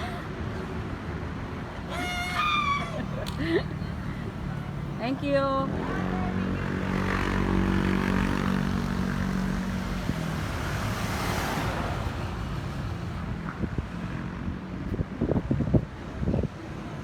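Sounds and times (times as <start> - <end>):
vehicle passing: 1.2 - 14.6
wind buffeting microphone: 13.2 - 17.0.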